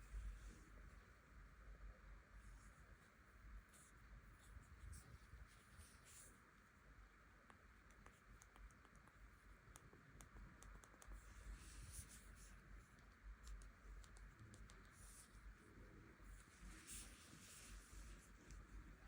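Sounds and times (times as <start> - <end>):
fingers tapping a smartphone: 7.5 - 11.2, 12.9 - 15.2.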